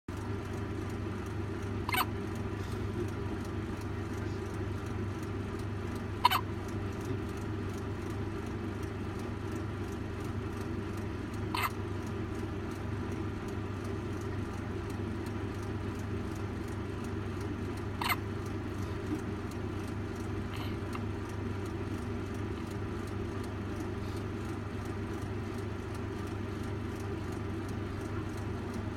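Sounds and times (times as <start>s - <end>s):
baby hiccuping: 6.2s - 6.5s, 11.5s - 11.8s, 18.0s - 18.2s.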